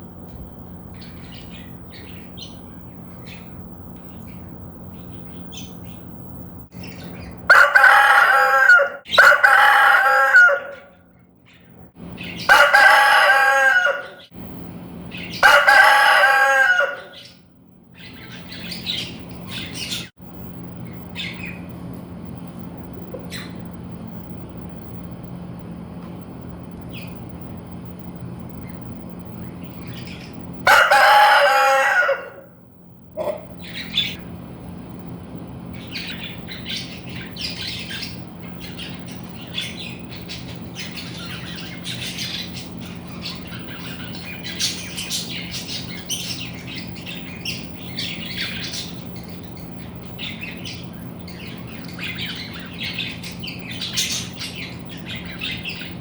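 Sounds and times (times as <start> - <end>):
steady low hum: 0.0 - 56.0
high bird chirps: 6.8 - 10.9, 12.1 - 14.3
rooster crowing: 7.5 - 11.0, 12.4 - 14.3, 15.3 - 17.4, 30.6 - 32.6.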